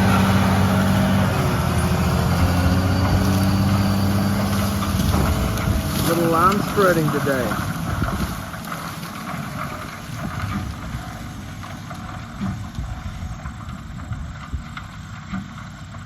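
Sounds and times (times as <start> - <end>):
wind buffeting microphone: 0.0 - 11.6
engine drone: 0.0 - 16.0.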